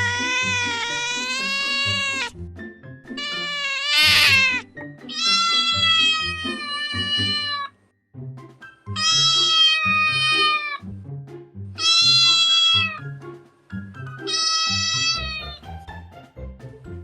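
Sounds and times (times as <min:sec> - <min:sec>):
cat meowing: 0:00.0 - 0:02.4, 0:03.1 - 0:07.8, 0:09.0 - 0:10.8, 0:11.8 - 0:13.0, 0:14.2 - 0:15.6
background music: 0:00.0 - 0:17.0.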